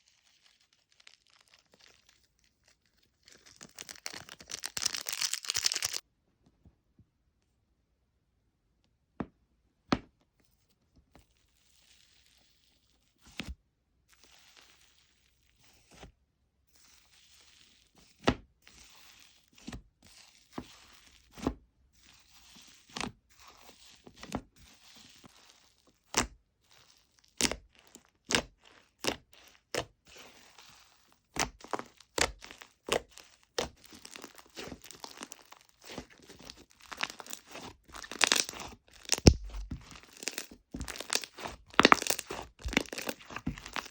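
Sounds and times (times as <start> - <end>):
soft slime crackling: 0.0 - 6.0, 26.7 - 43.9.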